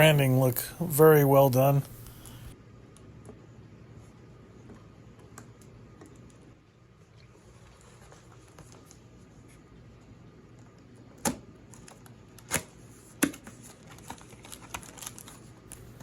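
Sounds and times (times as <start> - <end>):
cardboard packaging rustling: 13.6 - 16.0.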